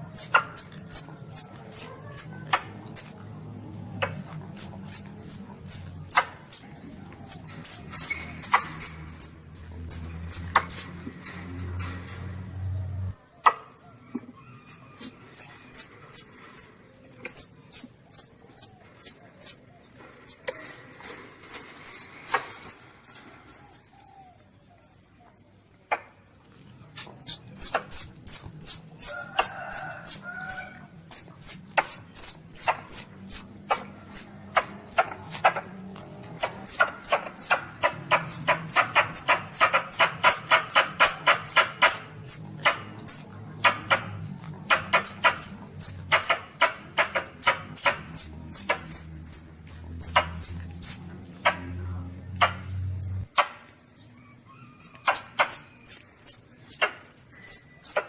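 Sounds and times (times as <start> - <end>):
baby civet squealing: 0.1 - 3.1, 4.6 - 10.9, 14.4 - 23.6, 27.0 - 35.6, 36.3 - 43.2, 44.7 - 51.0, 54.5 - 58.0.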